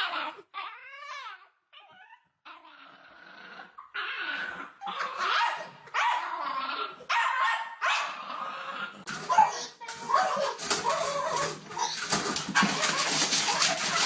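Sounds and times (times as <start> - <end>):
dog whining: 0.0 - 7.3
dog barking: 7.1 - 8.2, 9.2 - 10.7.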